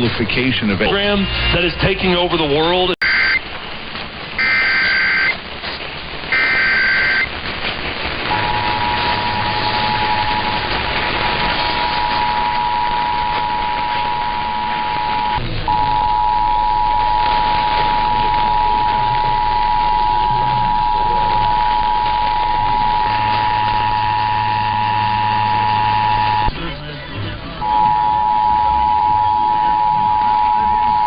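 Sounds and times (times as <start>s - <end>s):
radio hiss: 0.0s - 31.0s
two-tone attention signal: 3.0s - 3.4s, 4.4s - 5.4s, 6.3s - 7.3s, 8.3s - 10.6s, 11.6s - 26.5s, 27.6s - 31.0s
buzzing data tones: 3.0s - 3.5s, 4.4s - 5.4s, 6.3s - 7.4s, 8.1s - 26.5s.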